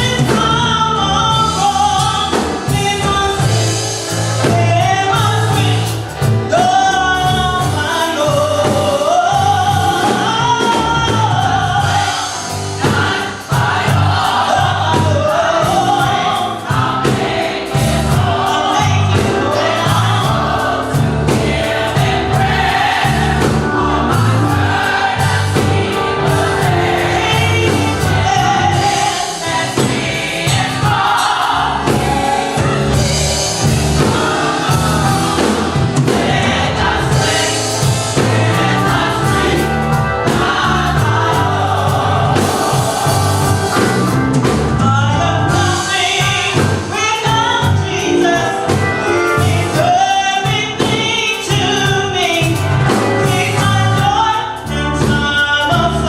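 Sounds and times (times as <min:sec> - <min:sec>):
bass and drums: 0:00.0 - 0:56.0
gospel choir singing: 0:00.0 - 0:56.0.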